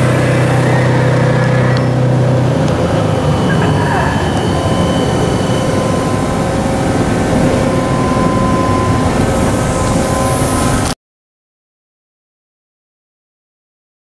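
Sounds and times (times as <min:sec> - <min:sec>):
lathe humming and rumbling: 0:00.0 - 0:11.0
machine whining tones: 0:00.0 - 0:11.0.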